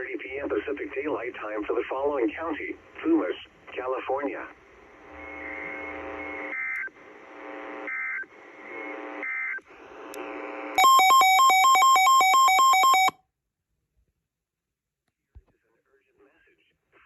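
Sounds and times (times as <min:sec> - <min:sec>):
radio hiss: 0:00.0 - 0:10.7
two-pitch electronic alert: 0:10.8 - 0:13.1.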